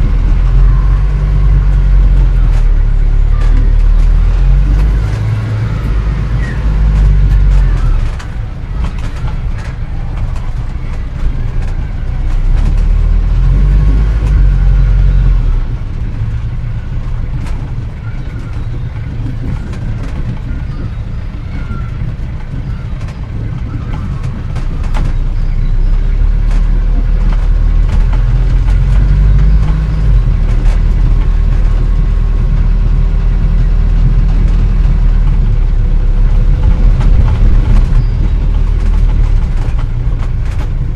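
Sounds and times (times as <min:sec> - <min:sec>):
old car engine rumbling: 0:00.0 - 0:40.9
clicks and rattles: 0:00.2 - 0:16.4, 0:26.3 - 0:40.9.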